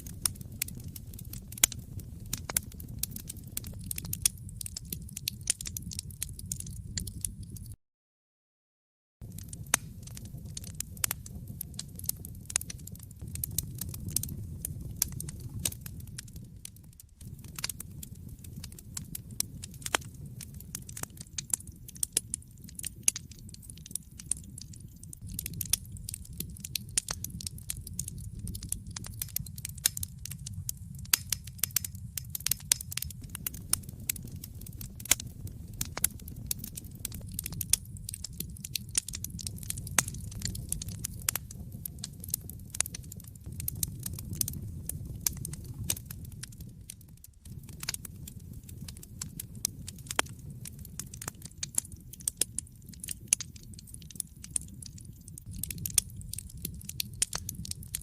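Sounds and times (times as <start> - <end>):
low rumble of flames: 0.0 - 7.8, 9.2 - 58.0
wood fire crackling and popping: 0.0 - 7.8, 9.2 - 58.0.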